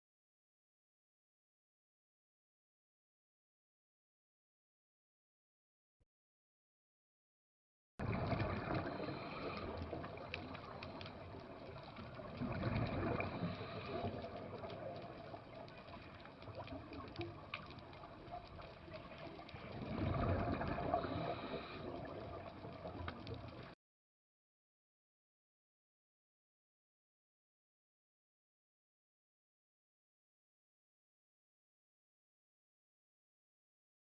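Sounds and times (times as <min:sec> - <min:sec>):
water rushing: 0:08.0 - 0:23.8.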